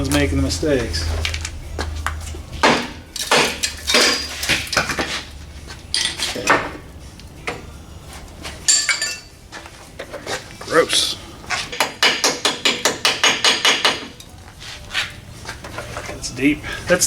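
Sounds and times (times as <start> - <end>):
low hum: 0.0 - 9.5
tools clanking on metal: 2.6 - 6.8, 8.6 - 9.4.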